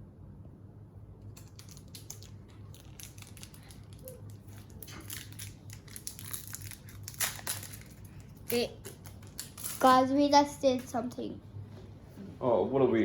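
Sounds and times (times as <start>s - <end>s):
steady low hum: 0.0s - 13.0s
foil wrapper crinkling: 1.4s - 9.9s.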